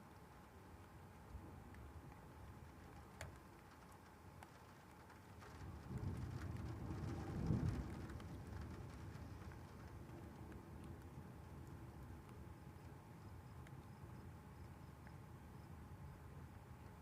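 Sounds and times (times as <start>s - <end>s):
light rain: 0.0s - 17.0s
thunder rumbling: 5.2s - 14.3s.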